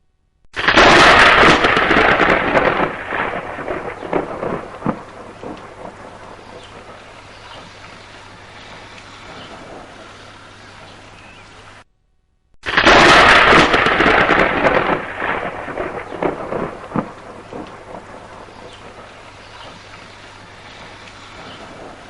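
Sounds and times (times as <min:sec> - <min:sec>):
thunderclap with rolling rumbles: 0:00.5 - 0:10.2, 0:12.6 - 0:22.0
steady rain: 0:00.5 - 0:11.9, 0:12.6 - 0:22.0.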